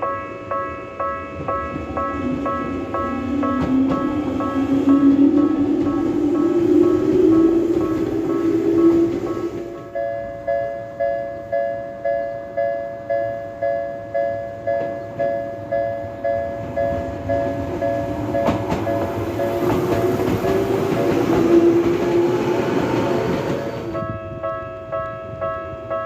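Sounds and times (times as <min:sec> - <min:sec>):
train running noise: 0:00.6 - 0:11.6, 0:12.4 - 0:26.0
rising motor whine: 0:02.3 - 0:09.8.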